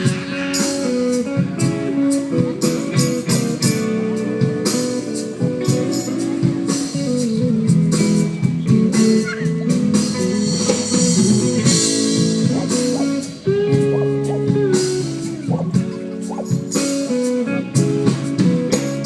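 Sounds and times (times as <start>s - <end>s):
live band with guitar: 0.0s - 19.0s
steady percussion: 9.8s - 19.0s.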